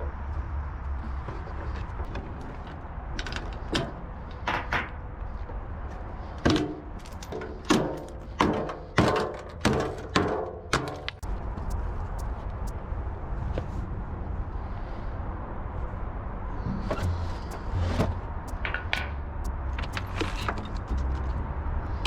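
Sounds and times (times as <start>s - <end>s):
vehicle engine rumble: 0.0s - 10.2s, 10.8s - 22.0s
loud metal clanks and thuds: 6.4s - 11.2s, 16.7s - 19.2s.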